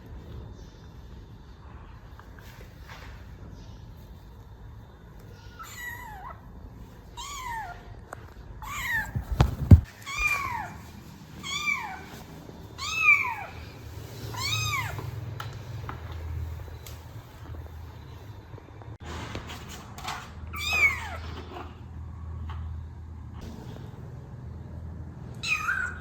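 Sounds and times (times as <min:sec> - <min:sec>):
kitten meowing: 0:25.4 - 0:26.0.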